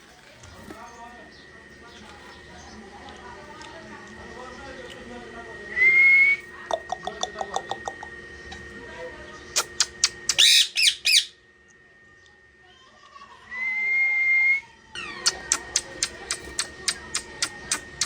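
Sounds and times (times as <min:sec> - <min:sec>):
parrot chirping: 0:09.6 - 0:11.4
parrot squawking: 0:09.6 - 0:11.4
parrot whistling: 0:09.6 - 0:11.4.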